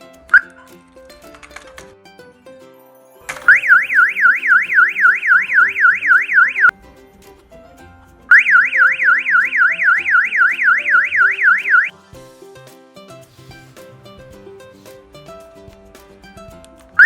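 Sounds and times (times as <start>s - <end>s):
electronic alarm siren sweeping: 3.5s - 6.7s, 8.3s - 11.9s.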